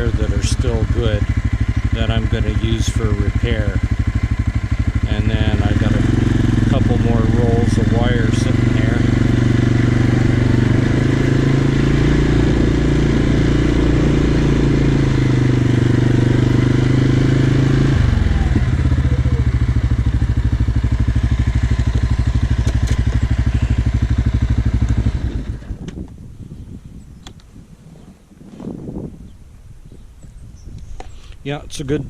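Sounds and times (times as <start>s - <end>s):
utility vehicle engine running: 0.0s - 26.0s.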